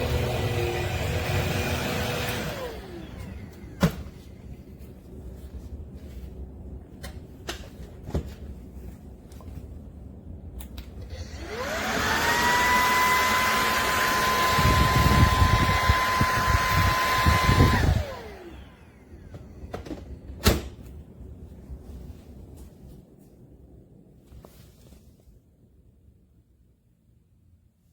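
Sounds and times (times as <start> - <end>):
vacuum cleaner motor whine: 0.0 - 4.4, 11.0 - 20.0.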